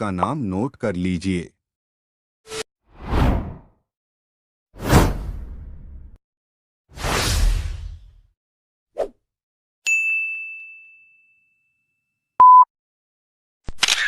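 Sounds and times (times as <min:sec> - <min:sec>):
loud steady beep: 0:12.4 - 0:12.7.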